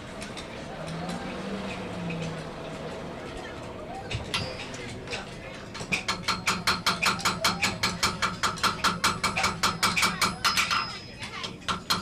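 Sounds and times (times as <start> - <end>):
hammer striking iron on anvil: 5.8 - 11.0, 11.7 - 12.0.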